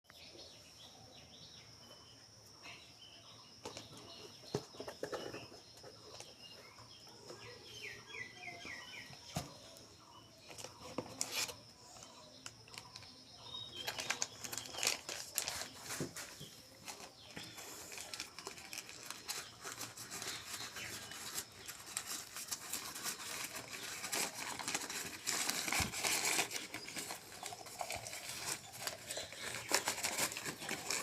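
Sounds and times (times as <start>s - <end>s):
packaging crinkling and tearing: 12.7s - 31.0s.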